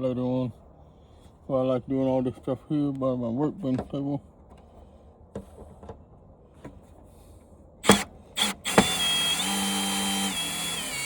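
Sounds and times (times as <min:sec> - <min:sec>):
power drill motor: 0:07.8 - 0:11.0.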